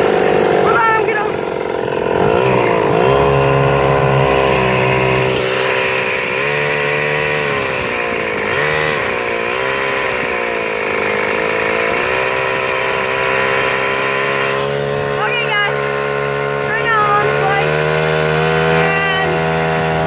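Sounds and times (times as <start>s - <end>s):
small motorbike engine revving: 0.0s - 20.0s.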